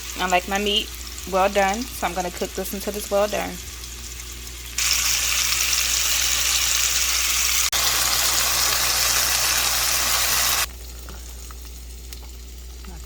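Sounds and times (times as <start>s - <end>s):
steak sizzling in a pan: 3.8s - 10.7s.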